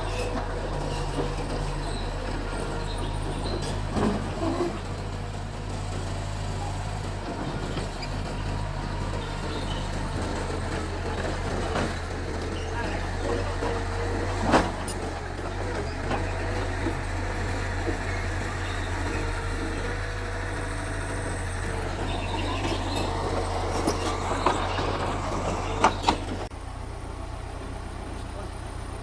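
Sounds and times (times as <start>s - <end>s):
bulldozer diesel engine running: 0.0s - 29.0s.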